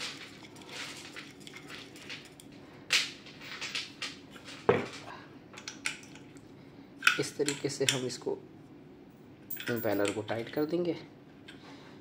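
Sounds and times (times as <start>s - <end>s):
metal tool clinking on nut: 9.5s - 10.7s.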